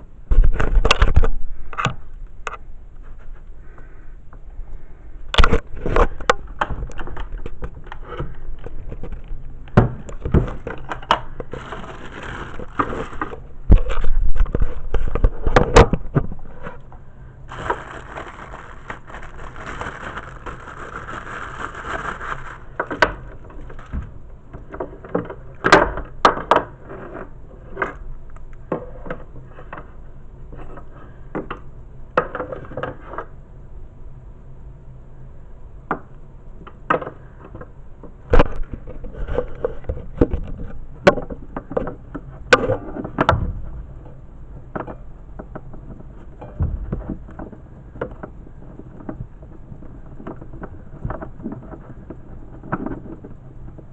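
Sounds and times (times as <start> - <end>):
cardboard and plastic rustling: 5.4 - 16.8, 17.5 - 24.2.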